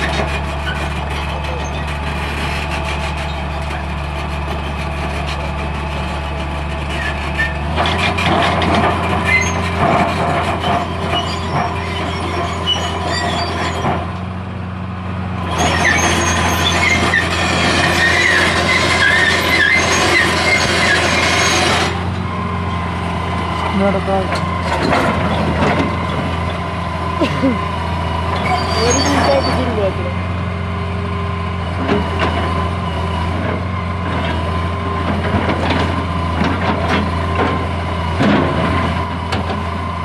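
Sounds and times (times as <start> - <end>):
high squeaks and rattles: 0.0 - 5.5, 6.8 - 14.0, 15.5 - 22.0, 28.3 - 29.9
excavator diesel engine running: 0.0 - 40.0.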